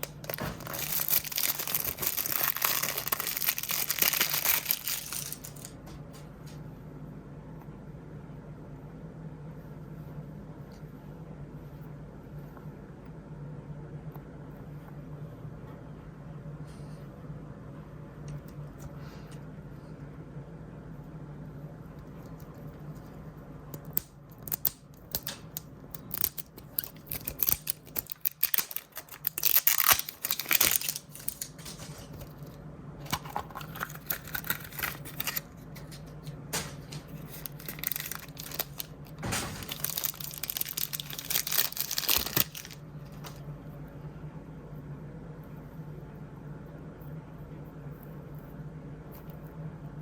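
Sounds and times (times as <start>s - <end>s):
packaging crinkling and tearing: 0.0s - 5.8s, 23.8s - 32.4s, 33.1s - 35.9s, 37.1s - 43.4s
steady low hum: 0.0s - 50.0s.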